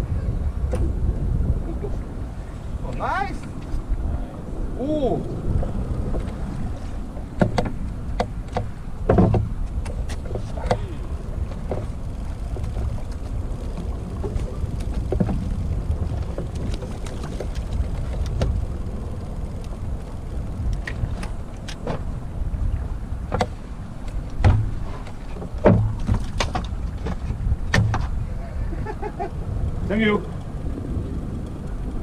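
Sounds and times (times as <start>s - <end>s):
boat engine rumble: 0.0s - 32.0s
water noise: 0.0s - 32.0s
sharp knocks and clicks: 7.4s - 10.9s, 23.3s - 28.2s.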